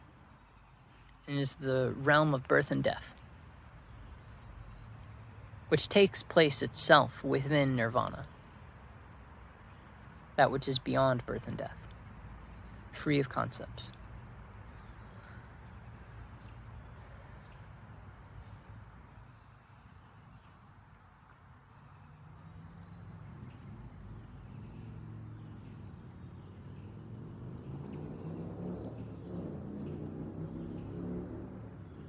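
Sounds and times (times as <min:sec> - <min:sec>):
insect chirping: 0:00.0 - 0:32.0
low hum: 0:22.4 - 0:32.0.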